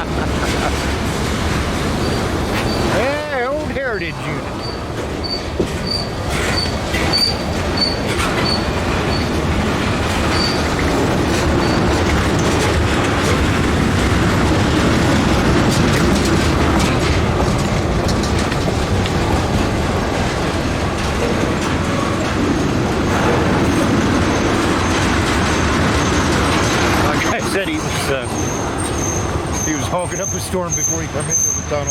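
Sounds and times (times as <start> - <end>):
steel wheels rumbling on rail: 0.0 - 31.9
wheels clicking over rail joints: 0.0 - 31.9
faint high wheel squeals: 1.8 - 9.4, 10.1 - 12.6, 23.0 - 31.9.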